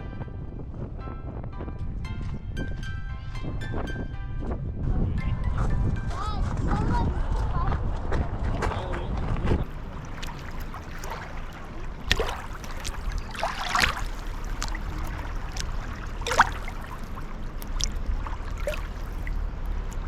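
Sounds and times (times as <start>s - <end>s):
steady low rumble: 6.7s - 20.0s
water trickling and splashing: 9.6s - 20.0s.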